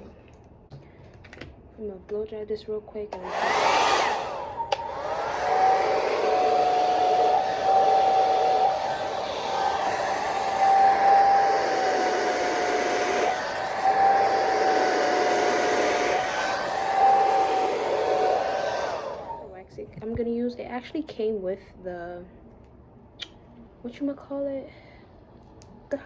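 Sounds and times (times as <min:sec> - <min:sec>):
hair dryer running: 0:03.2 - 0:19.5.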